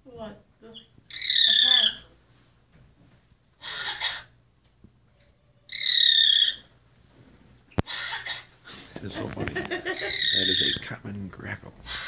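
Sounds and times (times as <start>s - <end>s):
high squeaky bird call: 0.7s - 2.1s, 5.6s - 6.7s, 9.9s - 10.8s
raspy bird sounds: 0.7s - 2.1s, 5.7s - 6.7s, 9.8s - 10.8s
bird cough-like call: 3.6s - 4.3s, 7.9s - 8.5s.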